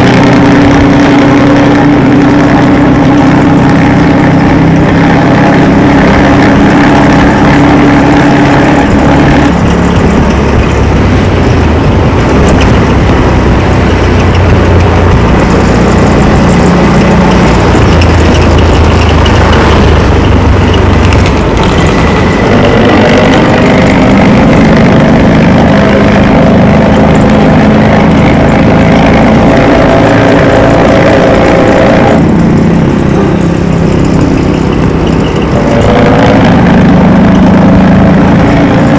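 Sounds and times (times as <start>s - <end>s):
bus engine deep rumble: 0.0s - 38.9s.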